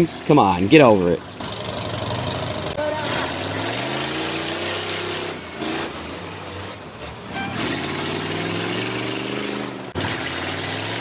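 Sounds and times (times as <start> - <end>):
bus engines revving: 0.0 - 11.0.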